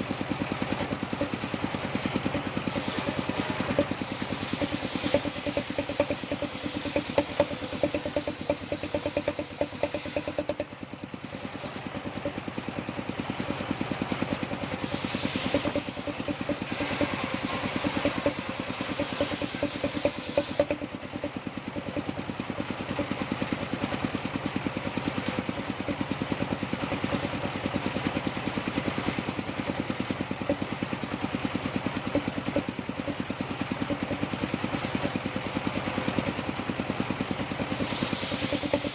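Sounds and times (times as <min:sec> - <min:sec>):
sawmill engine pulsing: 0:00.0 - 0:38.9
hiss: 0:01.9 - 0:10.5, 0:14.2 - 0:20.9, 0:37.3 - 0:38.9.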